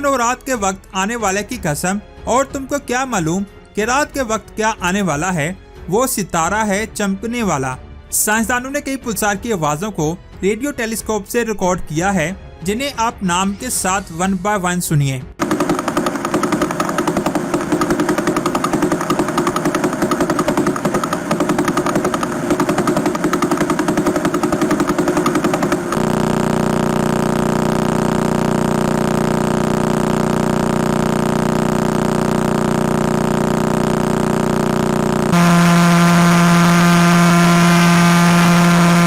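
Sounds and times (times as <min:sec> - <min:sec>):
fast train of radio pulses: 0:15.4 - 0:39.0
steady buzzing hum: 0:15.4 - 0:39.0.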